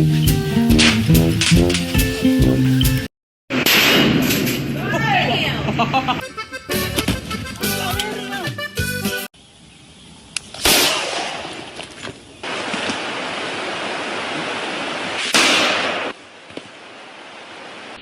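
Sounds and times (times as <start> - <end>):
loud gunshots ringing out: 3.5 - 4.8, 10.6 - 11.7, 15.2 - 16.2.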